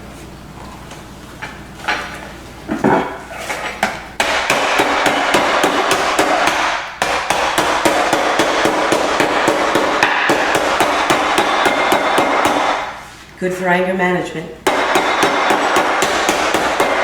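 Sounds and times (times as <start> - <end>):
rolling pin pounding crackers: 3.8 - 13.0, 14.6 - 17.0.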